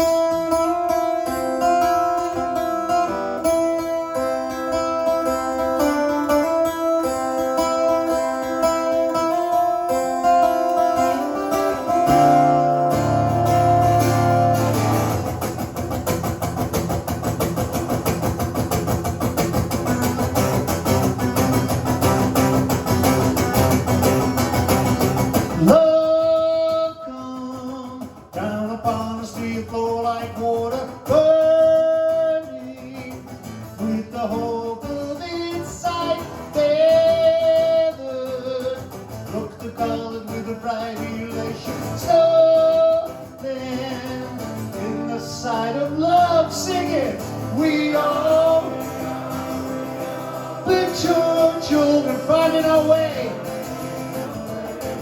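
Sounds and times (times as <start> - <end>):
live rock guitar strumming: 0.0 - 55.0.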